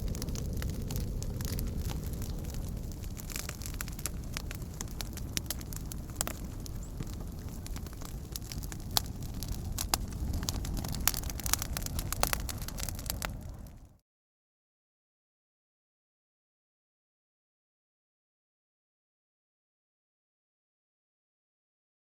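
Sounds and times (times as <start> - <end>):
burning wood crackling and popping: 0.0 - 14.0
campfire flames rushing: 0.0 - 14.0.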